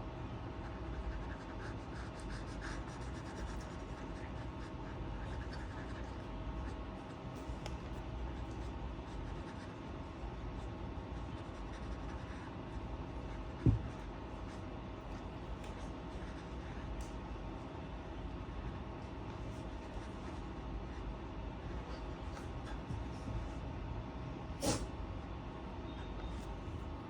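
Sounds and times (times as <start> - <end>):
colouring strokes scratching on paper: 0.5 - 7.7, 8.3 - 17.0
dull thump: 13.6 - 13.9.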